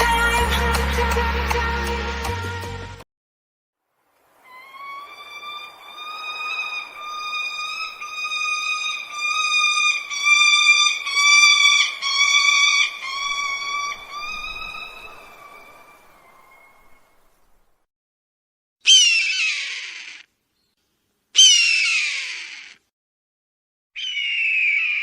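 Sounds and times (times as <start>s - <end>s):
hawk screaming calls: 4.4s - 17.0s, 18.8s - 20.3s, 21.4s - 22.8s, 24.0s - 25.0s.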